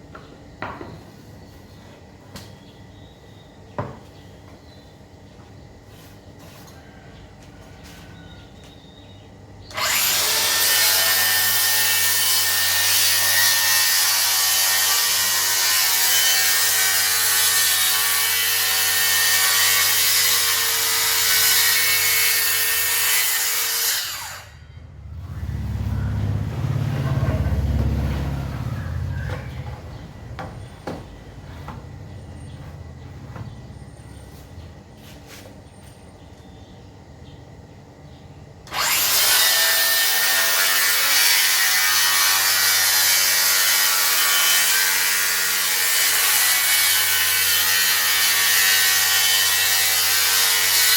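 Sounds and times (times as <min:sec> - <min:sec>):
circular saw cutting wood: 0:09.7 - 0:24.6, 0:38.7 - 0:50.9.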